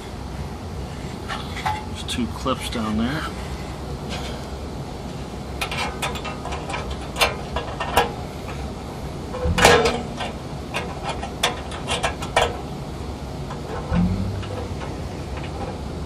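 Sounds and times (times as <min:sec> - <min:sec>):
metal parts clicking and rattling: 0:05.6 - 0:08.1
metal clatter: 0:05.6 - 0:08.6, 0:09.3 - 0:12.6, 0:13.5 - 0:15.9.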